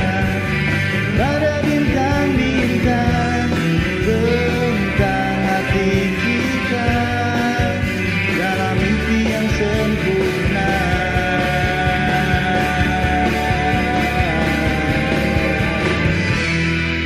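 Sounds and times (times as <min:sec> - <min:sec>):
pop-rock karaoke backing track: 0:00.0 - 0:17.0.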